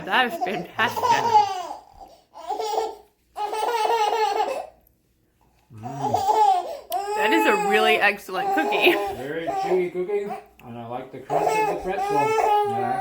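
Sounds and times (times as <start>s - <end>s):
child laughing: 0.5s - 1.7s.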